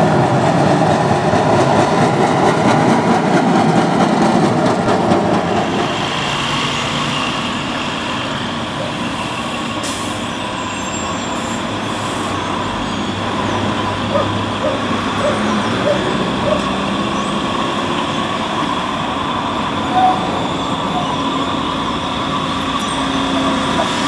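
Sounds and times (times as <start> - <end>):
rail vehicle rumbling past: 0.0 - 24.0
street traffic hum: 0.0 - 24.0.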